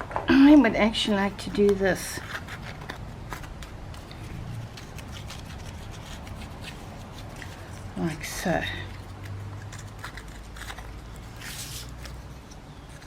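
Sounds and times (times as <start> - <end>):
paper rubbing and scrunching: 1.4 - 13.0.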